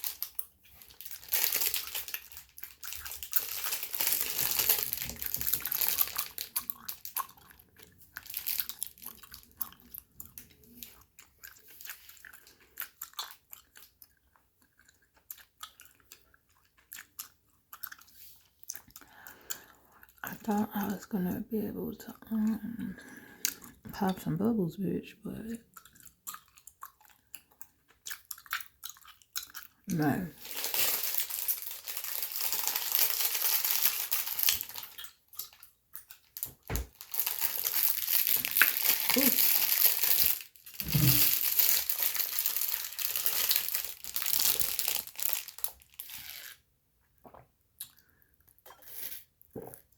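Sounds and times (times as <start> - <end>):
person chewing: 0.0 - 20.3, 22.4 - 23.9, 25.7 - 49.9
crinkling scratching rustle: 30.4 - 35.0, 36.9 - 46.6.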